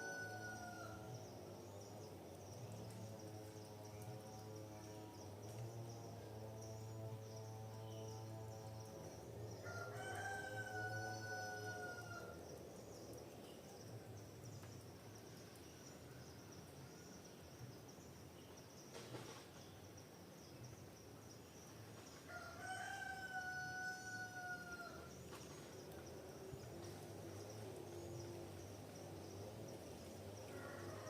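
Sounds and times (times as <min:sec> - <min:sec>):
rooster crowing: 0:00.0 - 0:01.0, 0:09.6 - 0:12.4, 0:22.3 - 0:25.1, 0:30.5 - 0:31.0.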